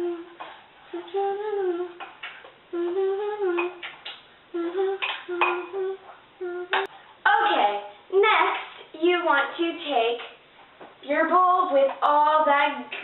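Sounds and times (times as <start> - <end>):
girl humming: 0.0 - 2.1, 2.7 - 3.9, 4.5 - 6.9.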